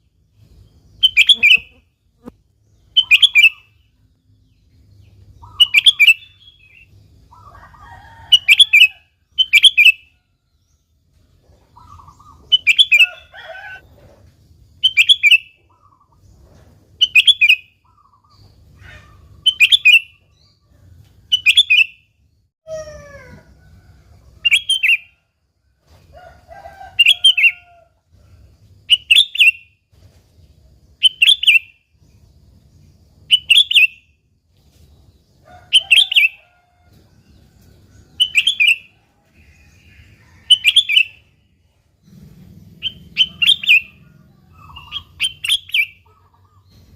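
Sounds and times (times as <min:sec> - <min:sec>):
bird chirping phrase: 0:00.9 - 0:01.9, 0:42.0 - 0:46.9.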